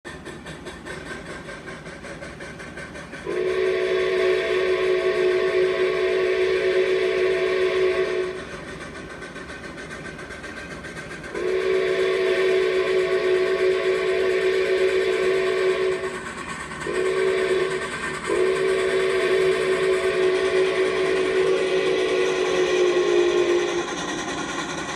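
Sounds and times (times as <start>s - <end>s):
steam hissing: 0.1s - 24.9s
steam whistle blasts: 3.2s - 8.6s, 11.3s - 24.9s.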